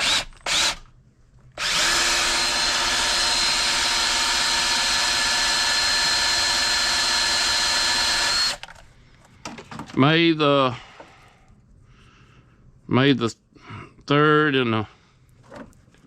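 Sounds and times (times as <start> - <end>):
wire-stripping tool motor whine: 0.0 - 0.9, 1.6 - 8.8.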